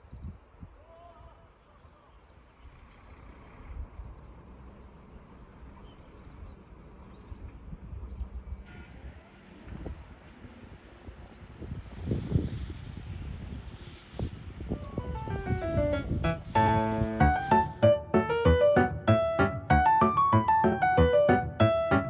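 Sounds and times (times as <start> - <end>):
wind gusting over microphone: 7.7 - 18.2.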